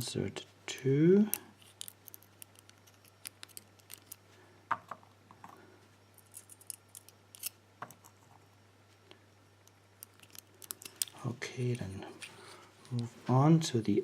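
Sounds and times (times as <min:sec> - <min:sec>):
metallic clicks of small pins: 0:01.3 - 0:04.2, 0:06.2 - 0:08.2, 0:09.6 - 0:13.0.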